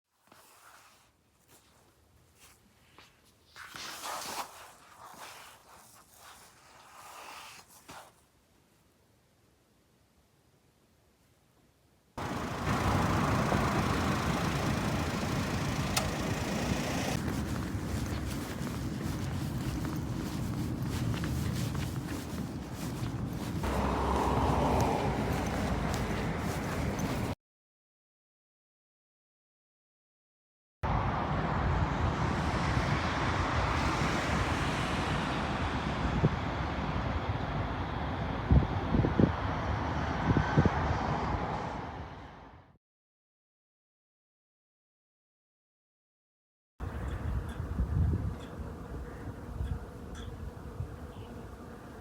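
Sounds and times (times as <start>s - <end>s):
traffic: 12.2s - 27.4s, 30.9s - 42.7s, 46.8s - 48.8s
wind on microphone: 12.2s - 27.4s, 31.7s - 42.2s, 46.9s - 51.0s.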